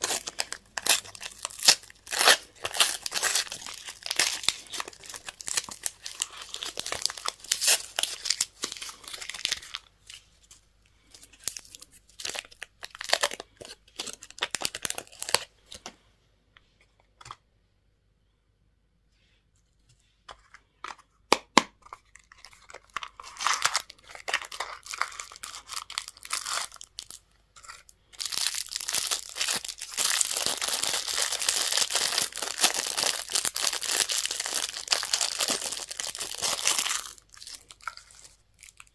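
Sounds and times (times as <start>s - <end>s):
wrappers crinkling and tearing: 0.0s - 10.2s, 11.0s - 15.5s, 22.1s - 38.9s.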